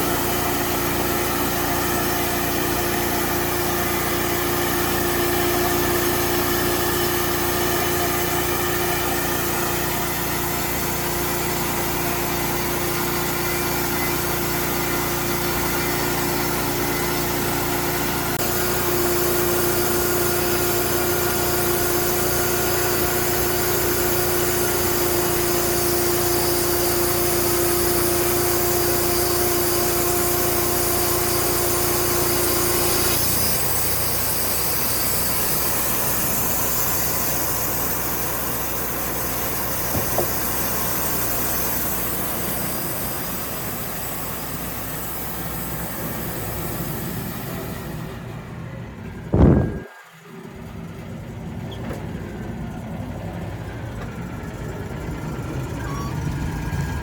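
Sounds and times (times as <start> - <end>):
band sawmill sawing log: 0.0 - 48.5
steady pitched hum: 49.1 - 51.5.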